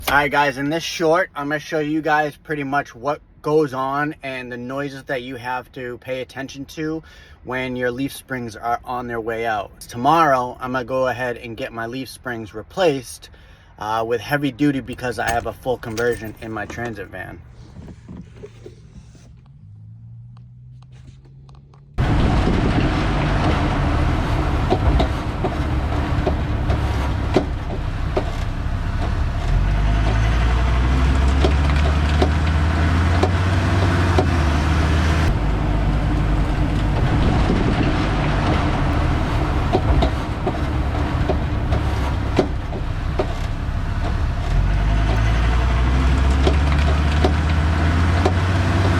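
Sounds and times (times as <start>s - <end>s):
road and tyre noise: 0.0s - 48.9s
van engine accelerating: 14.9s - 48.9s.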